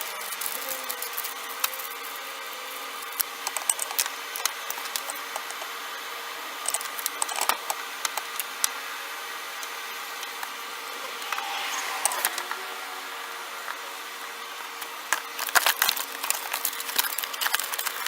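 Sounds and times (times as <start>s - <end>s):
steady hum: 10.8s - 14.8s.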